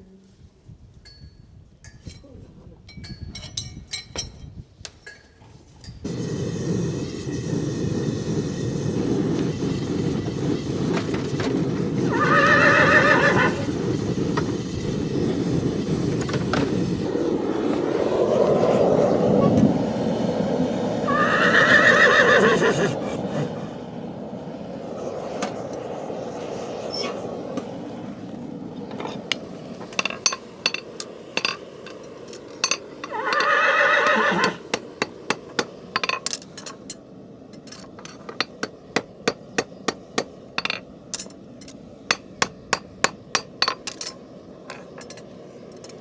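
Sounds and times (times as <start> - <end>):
horse whinnying: 12.1 - 13.7, 21.1 - 23.5, 33.0 - 34.6.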